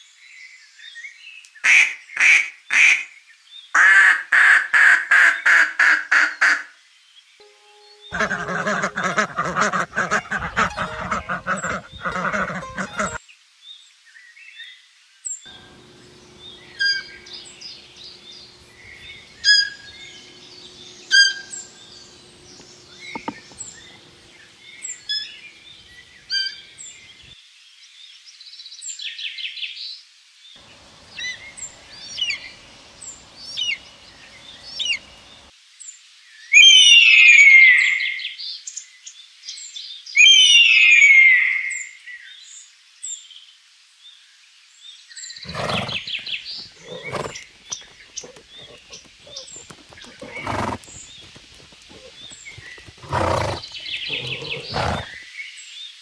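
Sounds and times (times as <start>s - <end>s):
downward sliding bird calls: 15.5s - 27.3s
low rough animal call: 15.5s - 27.3s, 45.5s - 51.0s, 51.8s - 55.2s
birds chirping and trilling: 15.5s - 27.4s, 45.4s - 55.2s.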